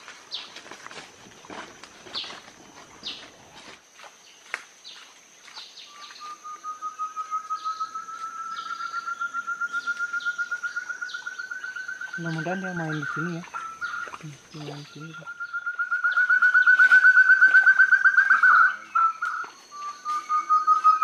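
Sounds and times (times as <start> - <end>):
bird chirps: 4.9 - 21.0.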